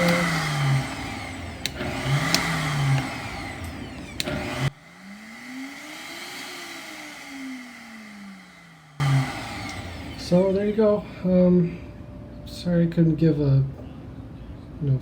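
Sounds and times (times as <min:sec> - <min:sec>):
blender motor running: 0:00.0 - 0:11.0.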